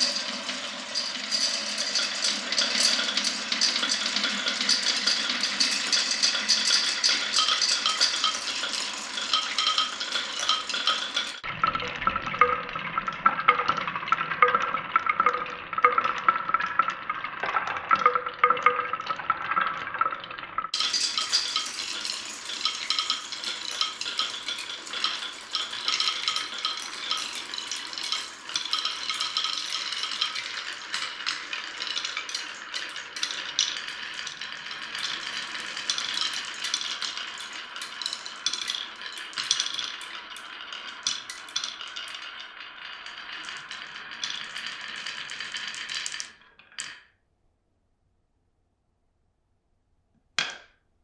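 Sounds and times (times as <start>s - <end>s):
marbles rattling through wooden run: 0.0s - 47.1s.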